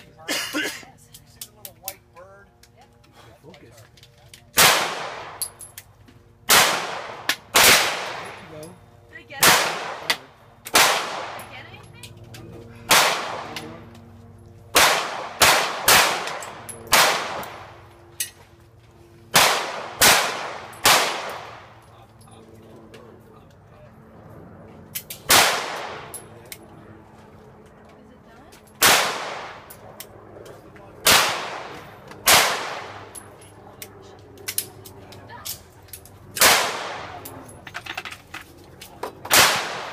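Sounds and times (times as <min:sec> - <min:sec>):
loud sharp echoing bangs: 0:06.5 - 0:08.3, 0:10.7 - 0:11.4, 0:12.9 - 0:13.6, 0:14.7 - 0:17.7, 0:19.3 - 0:21.7, 0:25.3 - 0:26.1, 0:28.8 - 0:29.6, 0:31.0 - 0:33.1.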